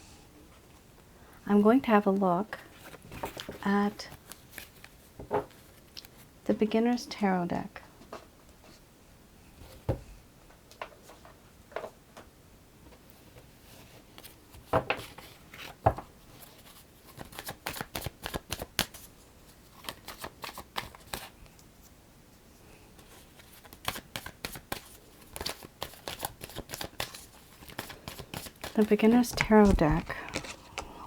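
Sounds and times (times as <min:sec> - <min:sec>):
cards being shuffled: 0:02.8 - 0:06.2, 0:14.1 - 0:19.1, 0:19.8 - 0:21.3, 0:23.0 - 0:30.9.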